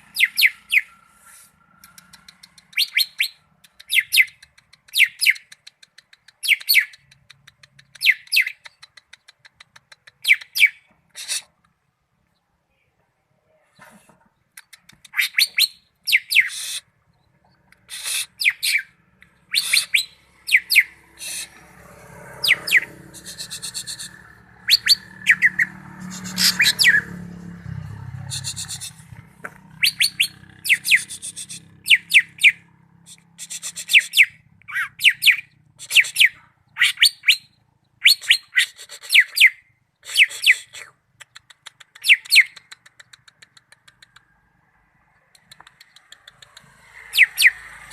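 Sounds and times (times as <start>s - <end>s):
bird whistling sharp phrases: 19.5s - 21.5s.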